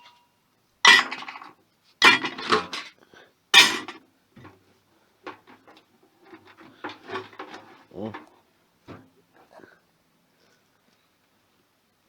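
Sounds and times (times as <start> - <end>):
metallic clanks of tools: 0.0 - 0.3, 0.9 - 3.0, 3.6 - 4.5.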